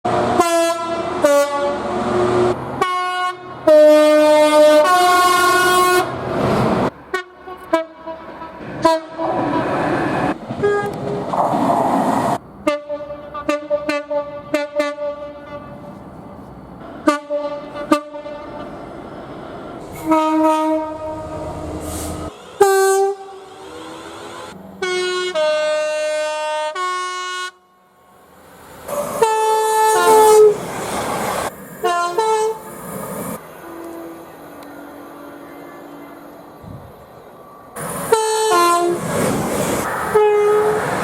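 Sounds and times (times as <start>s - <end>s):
train horn blasts: 0.1s - 6.2s, 7.1s - 9.8s, 10.6s - 11.2s, 12.6s - 15.9s, 16.8s - 18.7s, 19.9s - 21.7s, 22.6s - 28.0s, 28.9s - 30.6s, 31.8s - 32.7s, 33.4s - 35.5s, 38.1s - 39.0s, 40.1s - 40.9s
passing train rail noise: 0.1s - 41.0s.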